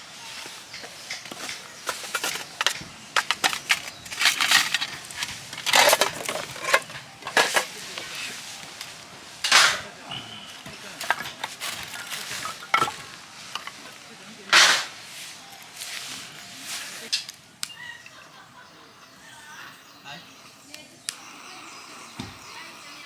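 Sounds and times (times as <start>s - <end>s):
handling clicks and knocks: 0.7s - 8.1s, 10.7s - 14.9s.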